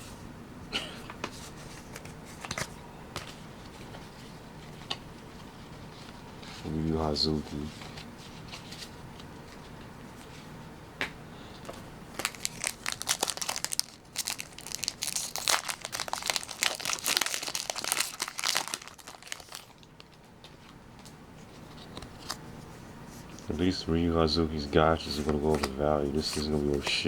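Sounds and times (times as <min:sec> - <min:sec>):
wrapper crinkling and tearing: 0:12.1 - 0:20.2.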